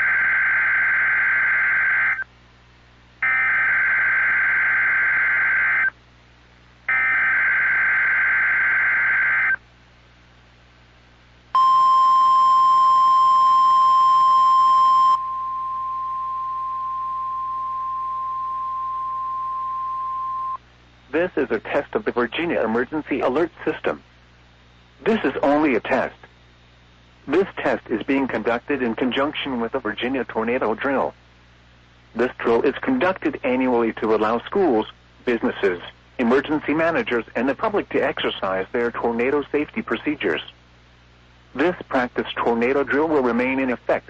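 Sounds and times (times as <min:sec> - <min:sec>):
data tone bursts: 0:11.6 - 0:20.6
single-pitched warning alarm tone: 0:11.6 - 0:20.6.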